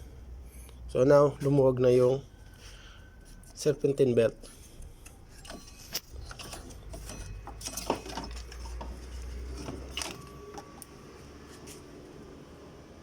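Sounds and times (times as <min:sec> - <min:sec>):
metal parts scraping and knocking: 0:05.0 - 0:10.8.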